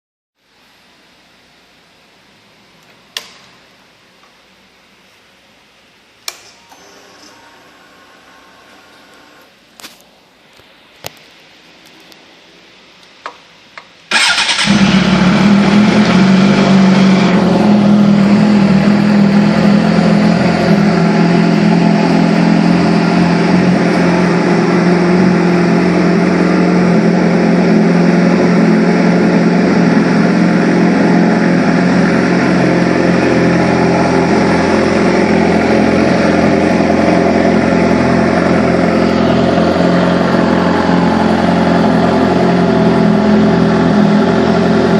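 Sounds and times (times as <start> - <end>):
motorcycle engine starting and running: 14.1 - 44.9.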